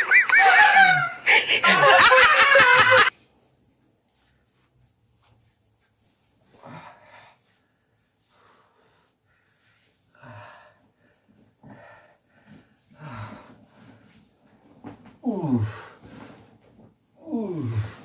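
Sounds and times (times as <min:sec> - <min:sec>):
man groaning: 0:17.2 - 0:18.0.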